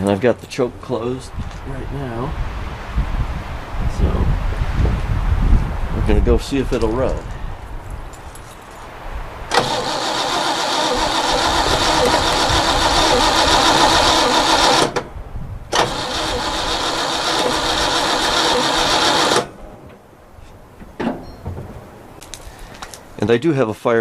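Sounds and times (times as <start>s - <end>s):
car engine cranking on starter: 9.5s - 15.1s, 15.7s - 19.7s.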